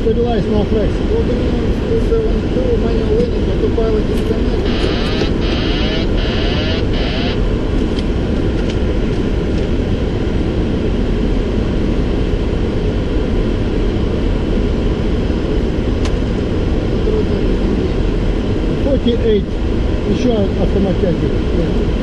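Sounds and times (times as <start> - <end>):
airflow and engine noise: 0.0 - 22.0
crackly buzz: 4.1 - 9.2.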